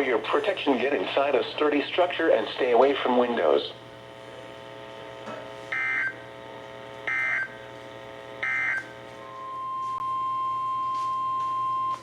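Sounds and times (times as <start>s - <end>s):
steady beep tone: 8.4s - 12.0s.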